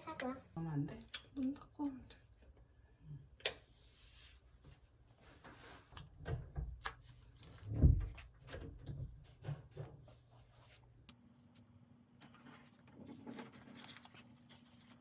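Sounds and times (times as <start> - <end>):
paper rustling: 12.3 - 15.0.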